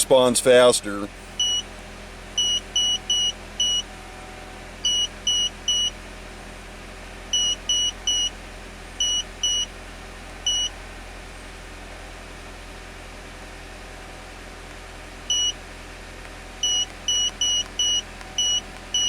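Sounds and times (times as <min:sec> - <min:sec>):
steady low hum: 0:00.0 - 0:19.0
short electronic beeps: 0:01.4 - 0:01.7, 0:02.4 - 0:03.9, 0:04.8 - 0:06.0, 0:07.3 - 0:08.3, 0:09.0 - 0:09.7, 0:10.5 - 0:10.7, 0:15.3 - 0:15.6, 0:16.6 - 0:19.0.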